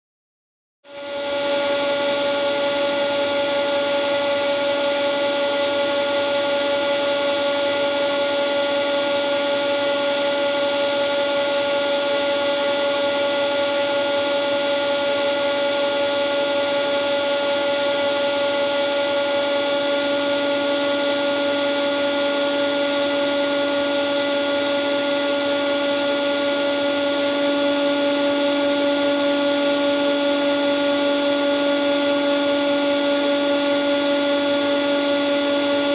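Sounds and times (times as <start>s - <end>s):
ventilation fan running: 0.9s - 35.9s.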